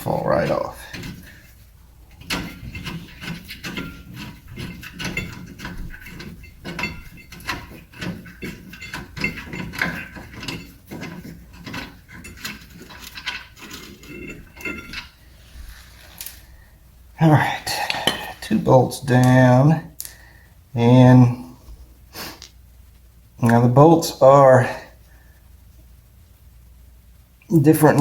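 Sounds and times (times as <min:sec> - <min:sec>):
brake caliper rattling: 0:00.0 - 0:16.4
wrench clicking and clanking: 0:02.1 - 0:15.1.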